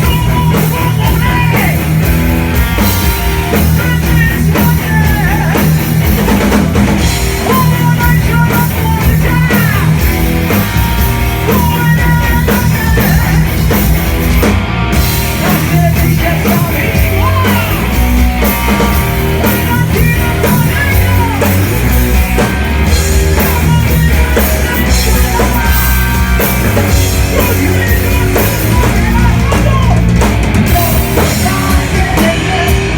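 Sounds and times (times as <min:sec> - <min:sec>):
electric guitar lead lines: 0:00.0 - 0:32.9
heavy rock band playing: 0:00.0 - 0:32.9
pounding drum kit: 0:00.0 - 0:32.9.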